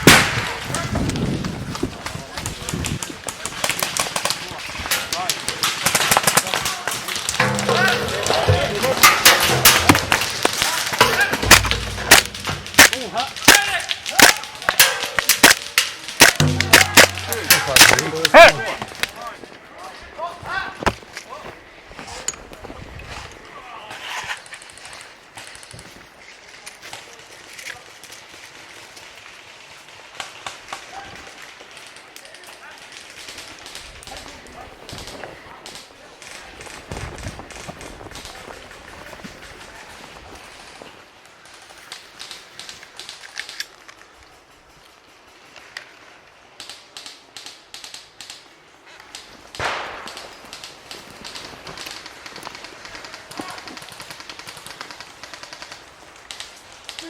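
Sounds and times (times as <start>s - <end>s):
outdoor field noise: 0.0s - 57.0s
airsoft guns firing: 7.3s - 18.7s, 49.5s - 55.8s.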